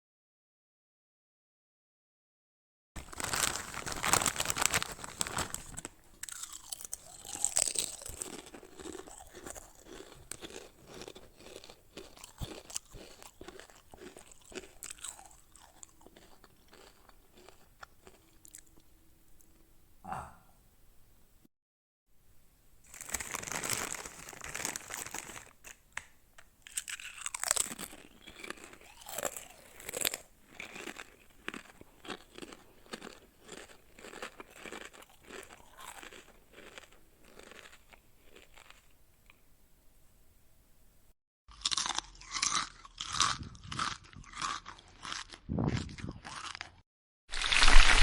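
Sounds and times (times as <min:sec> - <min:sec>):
person crunching chips: 0:03.0 - 0:18.8, 0:22.9 - 0:38.9, 0:41.5 - 0:48.0.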